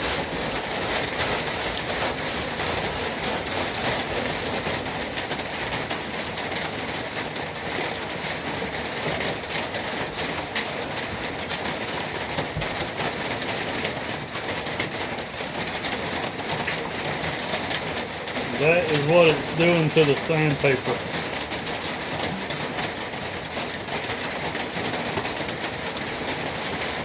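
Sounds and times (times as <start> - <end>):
sandpaper rubbing on metal: 0.0 - 5.8, 18.5 - 20.6.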